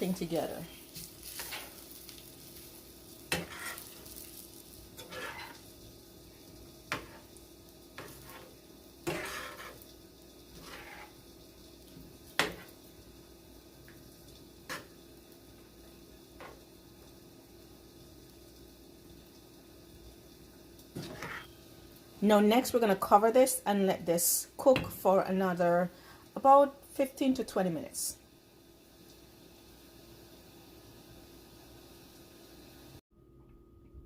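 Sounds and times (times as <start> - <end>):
spoon scraping pot: 3.3 - 3.9, 5.0 - 5.6, 8.0 - 9.9, 10.6 - 11.2, 21.0 - 21.6.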